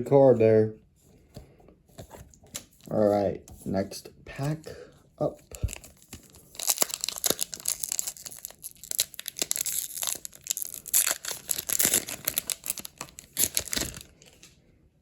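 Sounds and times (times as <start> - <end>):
foil wrapper tearing and crinkling: 5.7 - 14.2.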